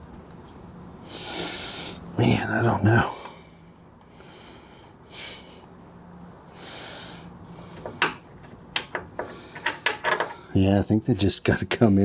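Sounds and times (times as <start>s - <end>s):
man breathing out through nose: 1.1s - 2.1s, 6.5s - 7.8s.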